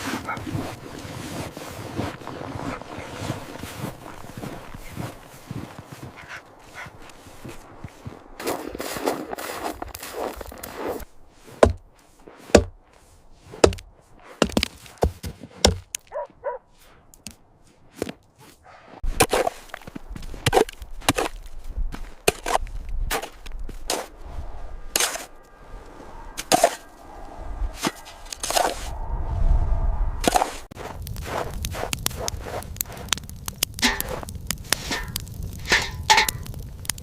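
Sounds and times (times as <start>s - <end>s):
sharp knocks: 11.6s - 11.8s
low rumble: 24.1s - 34.6s.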